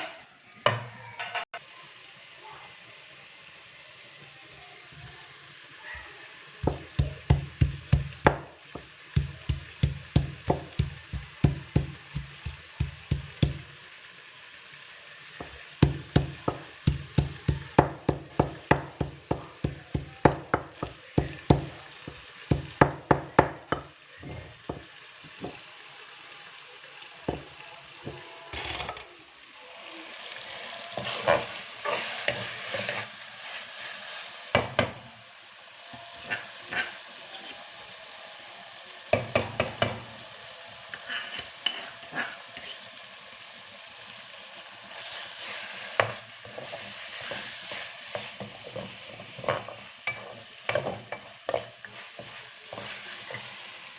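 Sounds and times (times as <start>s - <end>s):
liver sizzling in pan: 0.0s - 53.9s.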